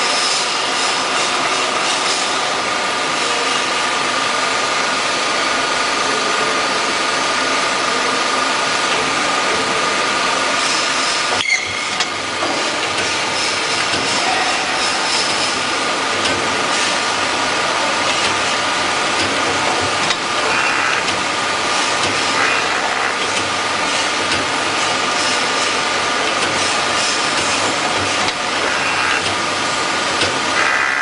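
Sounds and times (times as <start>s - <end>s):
grinding machine on saw blade: 12.5s - 24.2s, 24.8s - 31.0s.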